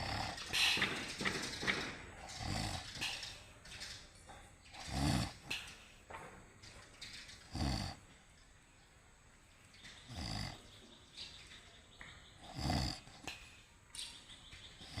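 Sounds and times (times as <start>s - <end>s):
person snoring loudly: 0.0s - 0.6s, 2.3s - 3.0s, 4.8s - 5.4s, 7.5s - 8.0s, 10.1s - 10.6s, 12.4s - 13.1s
quiet breathing: 0.0s - 1.2s, 2.1s - 3.8s, 12.3s - 13.9s.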